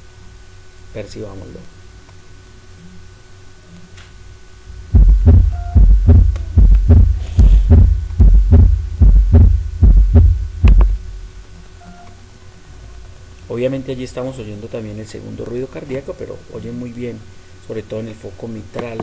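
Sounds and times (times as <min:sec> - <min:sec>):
heartbeat through stethoscope: 0:04.8 - 0:11.4.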